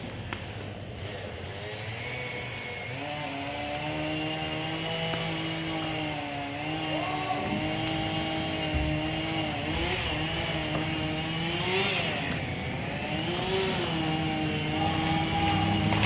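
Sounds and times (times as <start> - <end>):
chainsaw running: 0.0 - 16.0.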